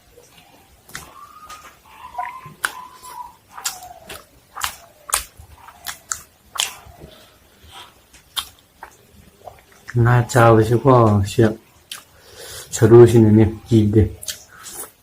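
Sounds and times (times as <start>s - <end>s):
person chewing crunchy food: 0.2s - 10.4s, 11.8s - 12.6s, 14.2s - 15.0s.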